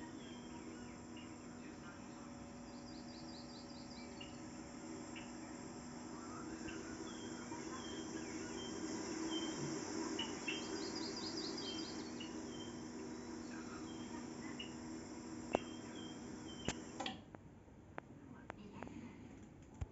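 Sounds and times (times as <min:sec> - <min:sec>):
birds calling: 0:00.0 - 0:16.9
crickets chirping: 0:00.0 - 0:16.9
steady low hum: 0:00.0 - 0:19.6
bird trill: 0:06.6 - 0:14.8.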